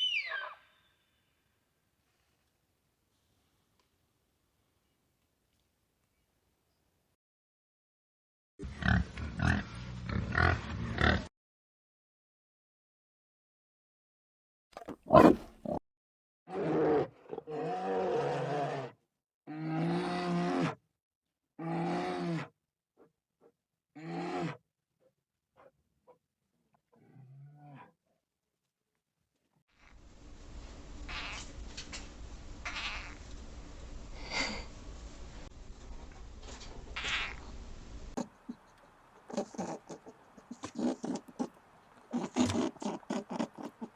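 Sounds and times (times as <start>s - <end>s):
large animal calling: 38.2s - 43.9s.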